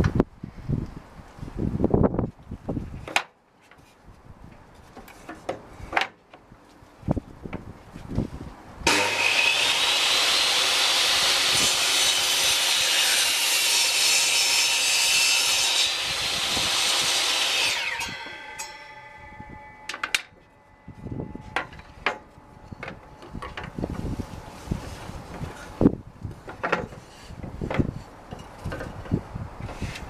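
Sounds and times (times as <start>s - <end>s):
table saw motor whine: 8.9s - 13.5s, 15.6s - 20.0s.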